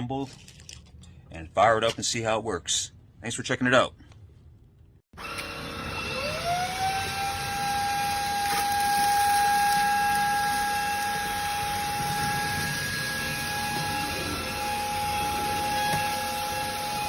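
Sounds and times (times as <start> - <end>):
vacuum motor whine: 5.2 - 17.0.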